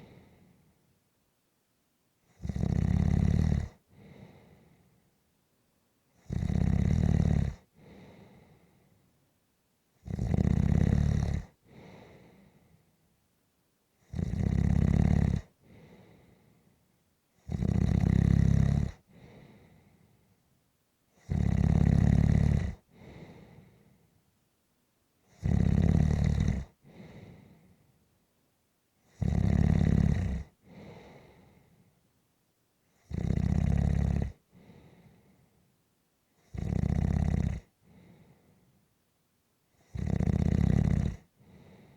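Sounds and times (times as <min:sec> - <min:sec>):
soft breath out: 0:00.0 - 0:00.8, 0:03.9 - 0:05.1, 0:07.8 - 0:09.2, 0:11.6 - 0:13.0, 0:15.6 - 0:16.8, 0:19.1 - 0:20.4, 0:22.9 - 0:24.2, 0:26.8 - 0:28.0, 0:30.6 - 0:32.0, 0:34.5 - 0:35.6, 0:37.8 - 0:38.8, 0:41.4 - 0:41.9
loud snoring: 0:02.3 - 0:03.8, 0:06.2 - 0:07.7, 0:10.0 - 0:11.9, 0:14.0 - 0:16.0, 0:17.4 - 0:19.3, 0:21.2 - 0:23.5, 0:25.3 - 0:27.4, 0:29.1 - 0:31.4, 0:33.0 - 0:34.8, 0:36.4 - 0:38.1, 0:39.8 - 0:41.7.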